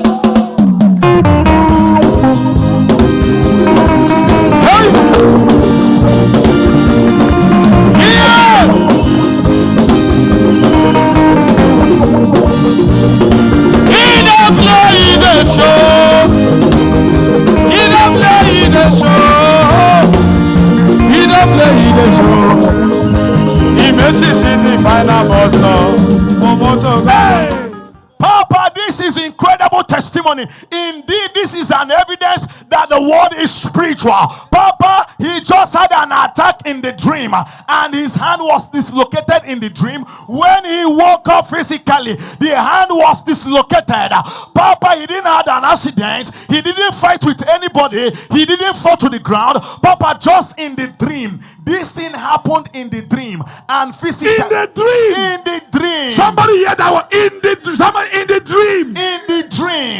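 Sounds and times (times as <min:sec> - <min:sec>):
loud music with drum kit: 0:00.0 - 0:28.0
people singing: 0:13.9 - 0:16.5, 0:17.6 - 0:20.2, 0:21.0 - 0:22.9, 0:23.7 - 0:27.8.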